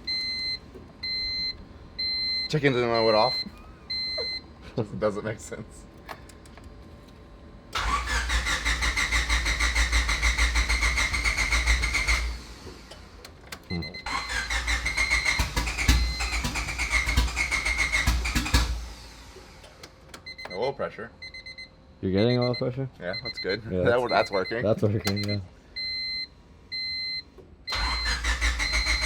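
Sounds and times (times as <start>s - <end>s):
starter cranking car engine: 7.8s - 13.4s, 14.1s - 19.9s, 27.7s - 29.0s.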